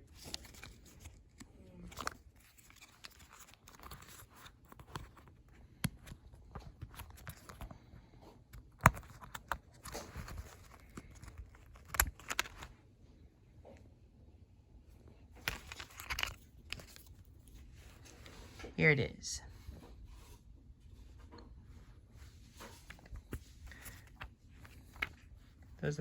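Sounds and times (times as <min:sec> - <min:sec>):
packaging rustling: 0:00.0 - 0:07.8, 0:08.5 - 0:12.7, 0:15.4 - 0:18.3, 0:22.6 - 0:25.8.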